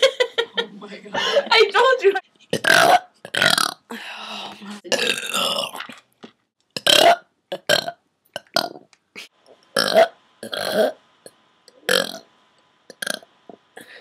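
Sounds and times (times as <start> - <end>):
girl burping: 4.9 - 5.9.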